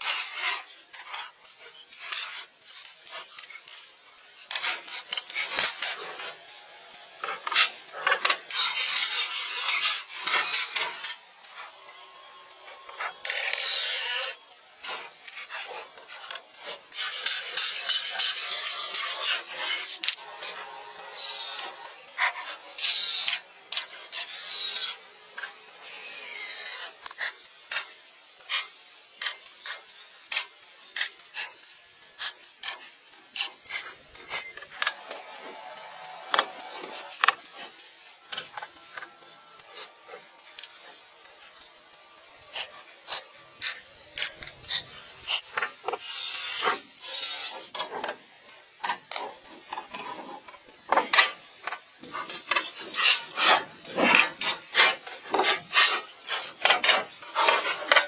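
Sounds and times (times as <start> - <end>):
hand tool rasping on wood: 52.0 - 58.0.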